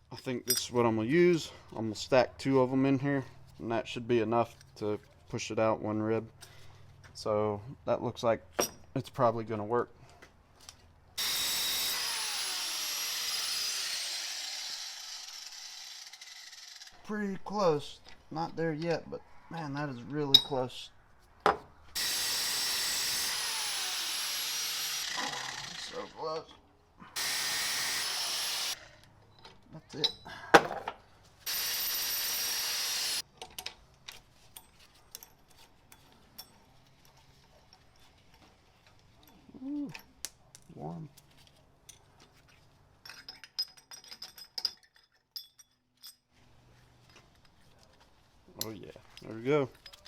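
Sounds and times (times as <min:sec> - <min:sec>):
grinder grinding steel: 0:11.2 - 0:17.0, 0:22.0 - 0:26.4, 0:27.2 - 0:28.9, 0:31.5 - 0:33.2.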